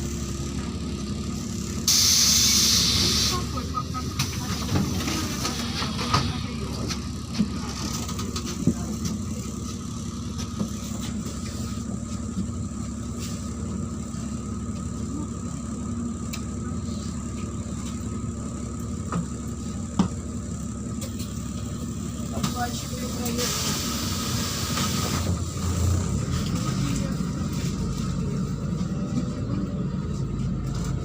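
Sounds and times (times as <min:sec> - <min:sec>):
bus engine and road rumble: 0:00.0 - 0:31.0
bus body knocks and rattles: 0:04.2 - 0:09.4.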